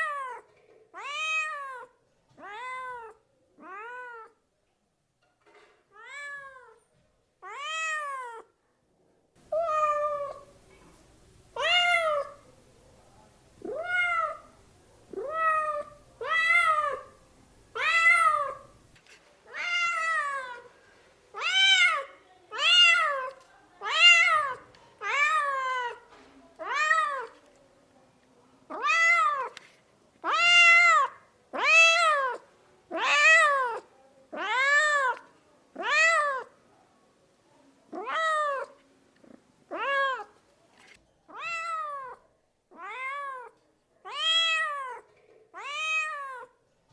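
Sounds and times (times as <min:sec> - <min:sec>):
cat meowing: 0:01.0 - 0:04.3, 0:06.0 - 0:06.8, 0:07.4 - 0:08.4, 0:09.4 - 0:10.7, 0:11.5 - 0:12.7, 0:13.6 - 0:20.6, 0:41.3 - 0:43.5, 0:44.1 - 0:45.0, 0:45.6 - 0:46.5.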